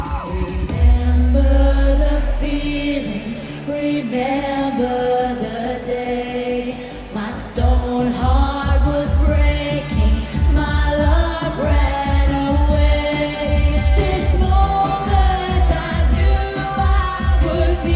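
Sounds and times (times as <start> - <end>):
steady kick-drum beat: 0.0 - 3.1, 7.6 - 17.9
live eurodance music: 0.0 - 17.9.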